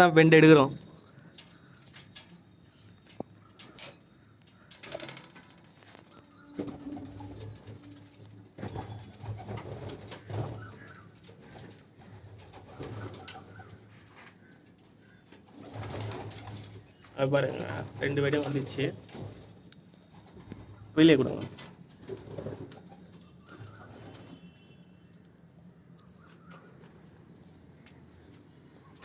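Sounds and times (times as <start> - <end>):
pigeons cooing: 0.8 - 18.8.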